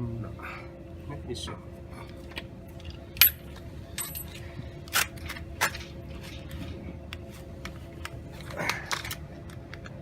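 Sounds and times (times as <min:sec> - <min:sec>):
metal hand tools clinking: 0:03.2 - 0:03.4, 0:04.0 - 0:04.4.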